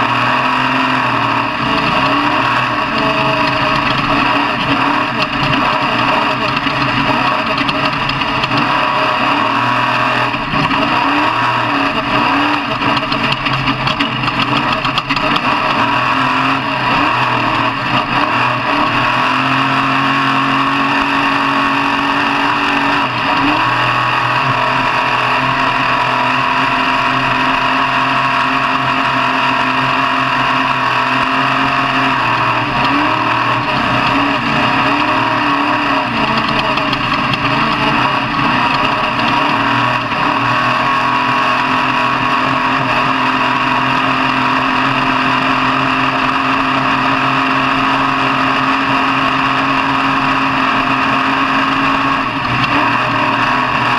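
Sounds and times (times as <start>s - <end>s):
truck engine running under load: 0.0s - 53.9s.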